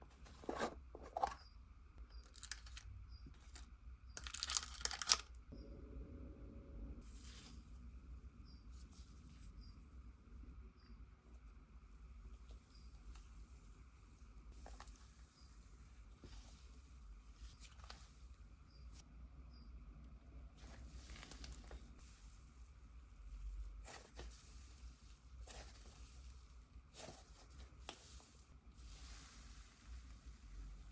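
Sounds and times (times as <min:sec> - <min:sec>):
slime crackling and squishing: 0:20.5 - 0:30.9.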